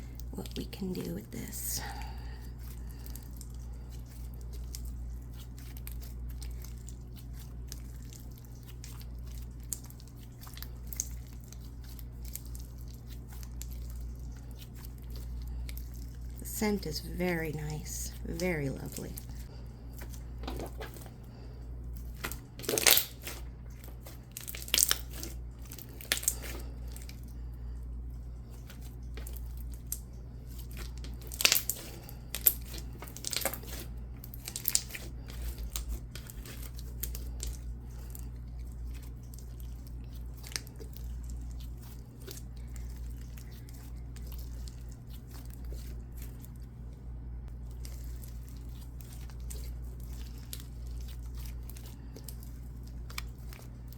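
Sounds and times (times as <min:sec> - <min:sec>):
sticky slime crackling: 0:00.0 - 0:53.9.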